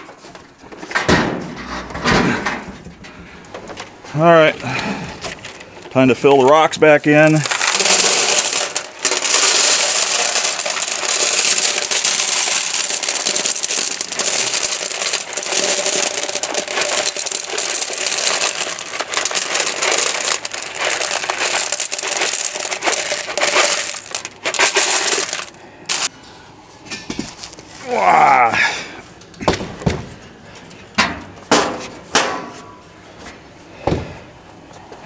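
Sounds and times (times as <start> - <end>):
stones clattering on metal: 7.1 - 26.1.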